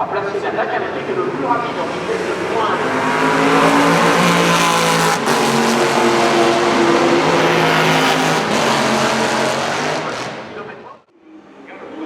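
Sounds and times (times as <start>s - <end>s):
race car engines running hard: 0.0s - 11.9s.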